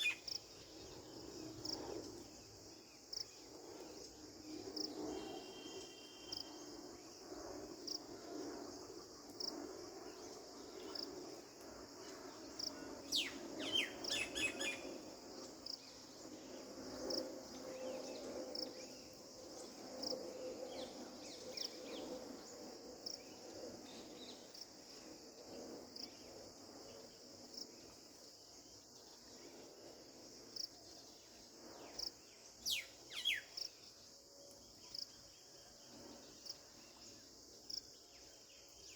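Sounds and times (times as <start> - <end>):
insects chirring: 0.0 - 38.9
bird whistling calls: 13.2 - 14.8, 32.7 - 33.5.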